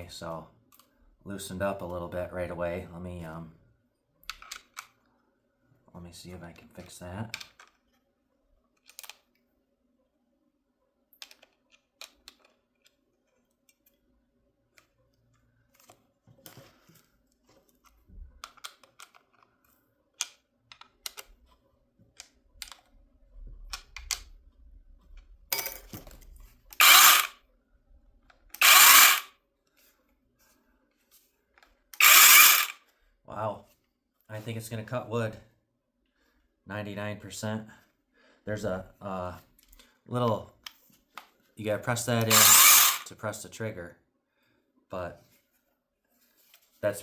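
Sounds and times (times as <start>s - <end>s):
cordless chainsaw whirring: 26.8s - 27.4s, 28.6s - 29.3s, 32.0s - 32.8s, 42.2s - 43.1s.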